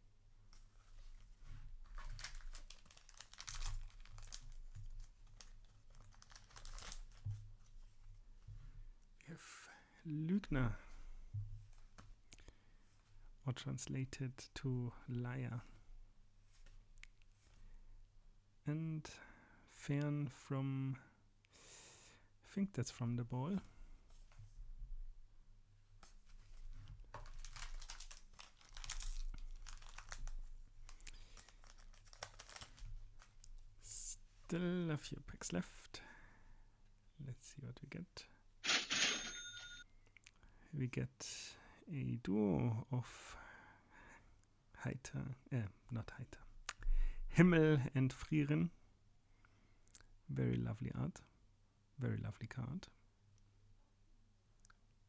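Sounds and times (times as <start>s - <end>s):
wrapper and cards crackling: 1.8s - 7.2s, 26.4s - 33.6s.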